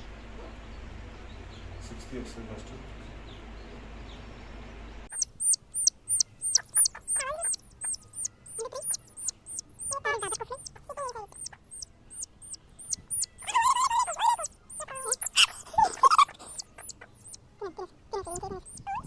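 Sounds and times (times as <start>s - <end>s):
chicks peeping: 5.1s - 19.0s.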